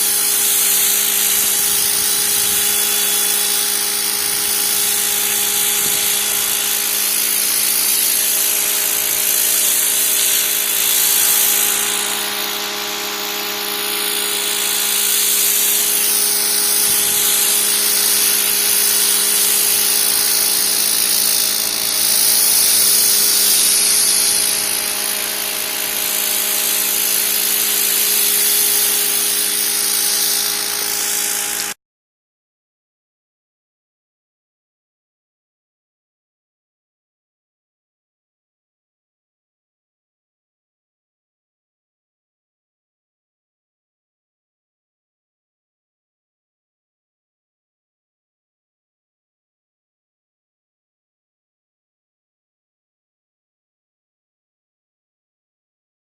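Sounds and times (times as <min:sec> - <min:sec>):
high-pressure water jet hissing: 0:00.0 - 0:31.8
pressure washer motor hum: 0:00.0 - 0:31.8.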